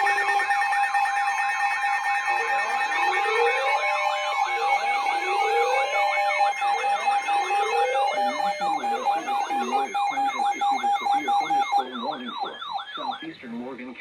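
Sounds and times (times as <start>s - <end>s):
steady siren tone: 0.0s - 13.3s
electronic sirens yelping and wailing: 0.0s - 13.4s.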